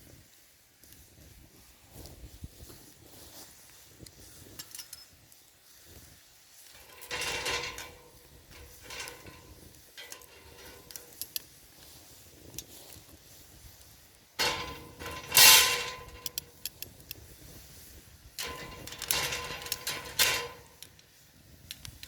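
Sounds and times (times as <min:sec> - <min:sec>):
metal cooking gear clattering: 0:06.7 - 0:11.4, 0:14.4 - 0:16.6, 0:18.4 - 0:21.0.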